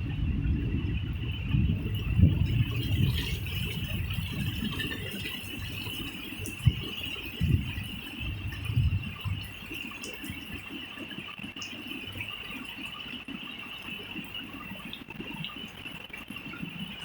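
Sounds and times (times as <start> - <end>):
wind gusts buffeting: 0.0 - 10.6
rain: 0.0 - 17.0.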